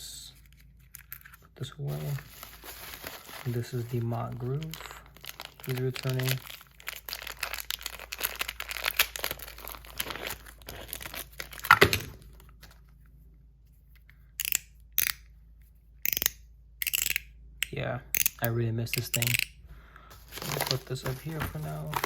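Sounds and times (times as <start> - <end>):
packaging crinkling and tearing: 1.9 - 12.8, 20.1 - 22.0.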